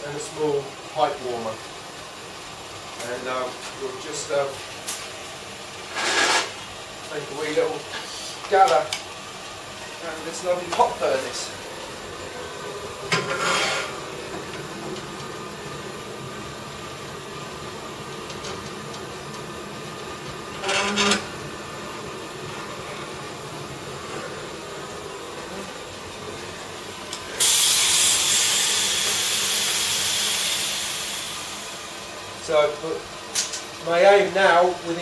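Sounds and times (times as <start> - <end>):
furnace drone: 0.0 - 35.0
loud hiss: 27.3 - 32.6.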